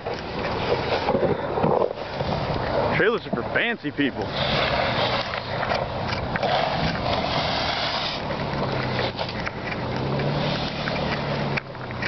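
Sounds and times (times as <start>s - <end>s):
loud rough rushing noise: 0.0s - 12.0s
vehicle engine humming: 0.0s - 12.0s.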